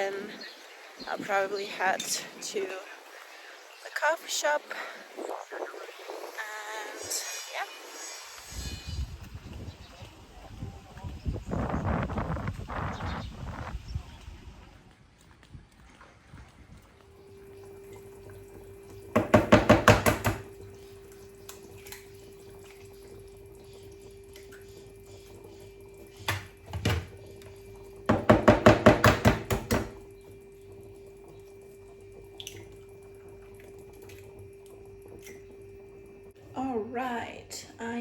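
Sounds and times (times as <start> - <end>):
knocks: 19.2 - 20.4, 28.1 - 30.0.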